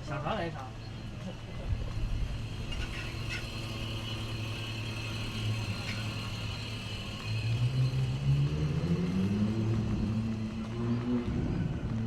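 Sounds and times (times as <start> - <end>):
vehicle engine accelerating: 3.3 - 12.0.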